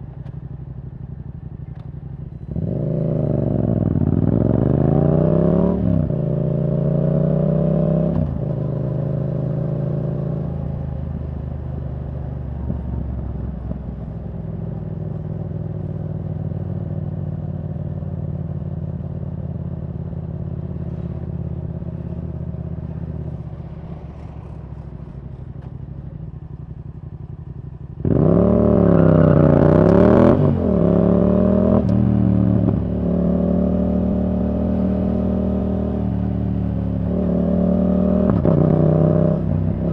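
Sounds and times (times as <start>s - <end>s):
motorcycle engine revving: 2.2s - 39.9s.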